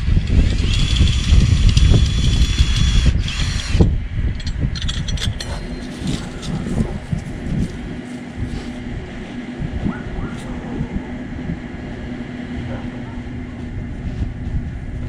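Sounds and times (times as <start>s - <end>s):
drill motor whining: 0.0s - 4.5s
wind rumble on microphone: 0.0s - 15.0s.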